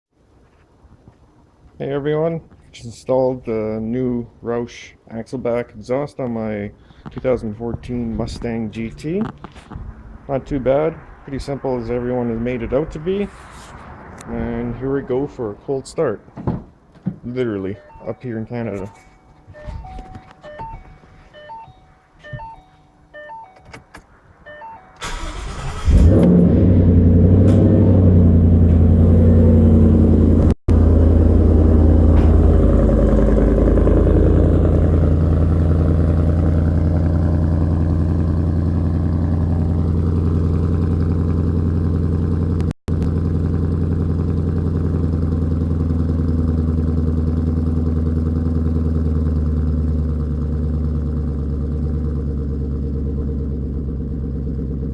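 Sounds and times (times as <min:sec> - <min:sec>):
steady beeping: 0:17.4 - 0:25.3
car engine idling loudly: 0:27.2 - 0:54.9.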